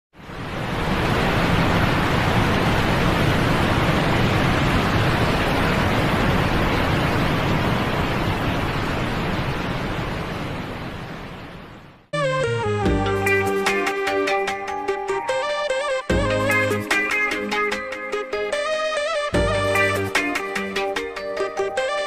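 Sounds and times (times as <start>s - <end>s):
steady rushing noise: 0.2s - 12.1s.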